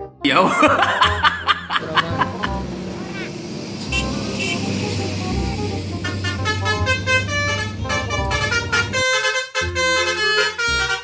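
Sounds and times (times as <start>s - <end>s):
low engine hum: 0.9s - 9.2s
bus horn playing a tune: 1.0s - 11.0s.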